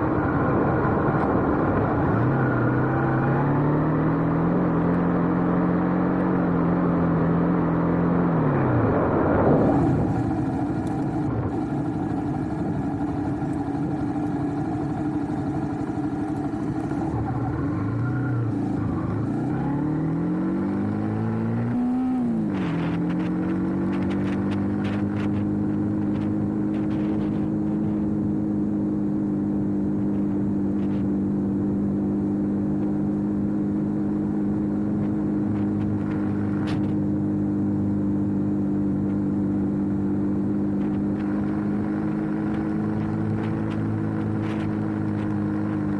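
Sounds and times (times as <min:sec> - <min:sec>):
motorcycle engine idling: 0:09.9 - 0:17.7.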